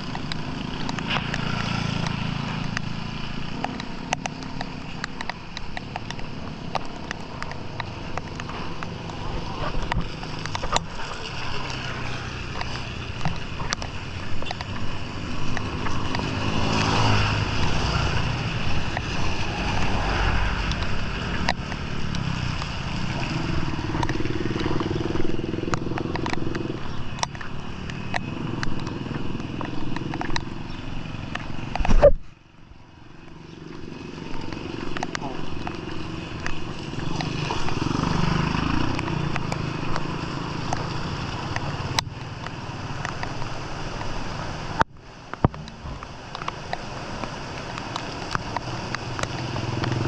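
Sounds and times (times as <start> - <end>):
sharp clicks: 0.0 - 50.0
vehicles passing: 0.0 - 50.0.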